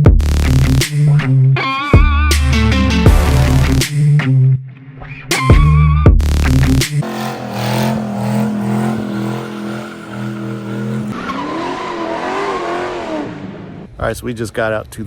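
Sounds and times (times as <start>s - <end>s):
car engine at high revs: 7.0s - 14.0s.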